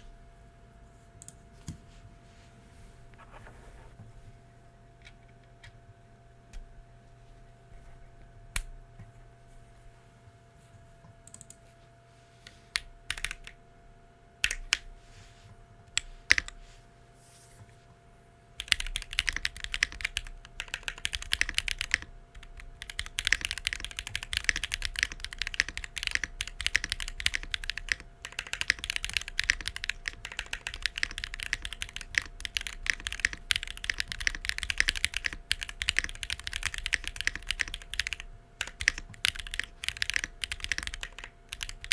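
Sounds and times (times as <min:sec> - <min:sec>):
mechanical keyboard typing: 0:12.8 - 0:13.6, 0:14.4 - 0:14.8, 0:16.0 - 0:16.6, 0:18.6 - 0:41.9.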